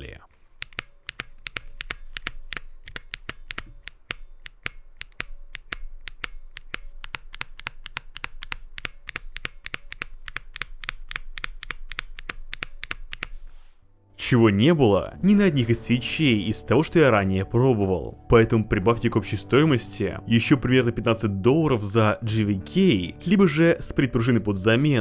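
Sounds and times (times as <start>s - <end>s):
mechanical keyboard keystroke clacks: 0.5s - 13.5s.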